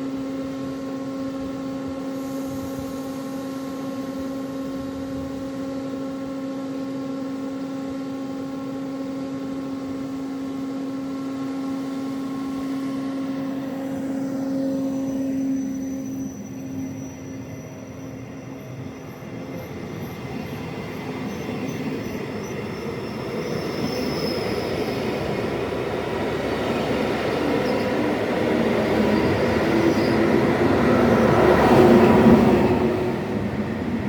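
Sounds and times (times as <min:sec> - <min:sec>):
electric train passing: 0:00.0 - 0:34.0.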